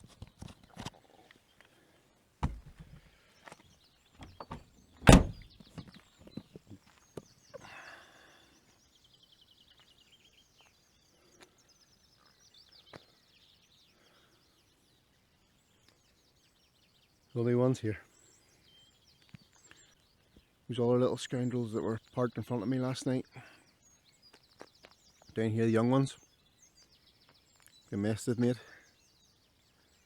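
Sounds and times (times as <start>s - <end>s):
light clicks and knocks: 2.4s - 3.0s, 4.2s - 5.5s
van door knocks and thunk: 2.4s - 3.0s, 4.2s - 5.5s.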